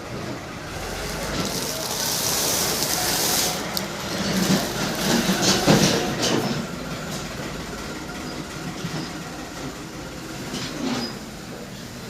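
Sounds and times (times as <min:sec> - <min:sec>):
washing machine running: 0:00.0 - 0:10.2
washing machine clatter: 0:00.7 - 0:07.6.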